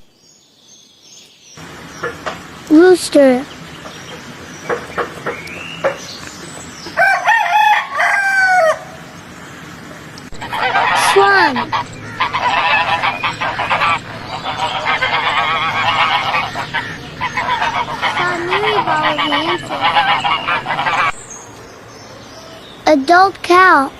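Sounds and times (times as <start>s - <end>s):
swans honking: 1.6s - 21.5s
rooster crowing: 6.9s - 9.2s, 10.4s - 21.1s.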